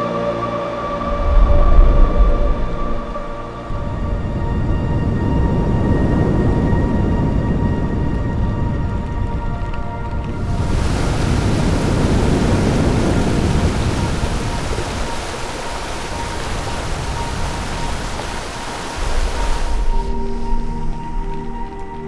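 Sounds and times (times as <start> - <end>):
rough sea water rushing: 1.1 - 21.9.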